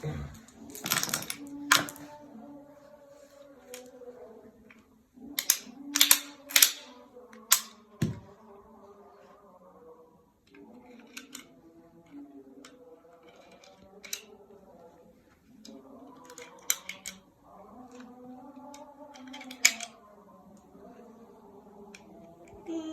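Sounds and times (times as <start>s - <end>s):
pistol clicks and clacks: 5.4s - 7.8s.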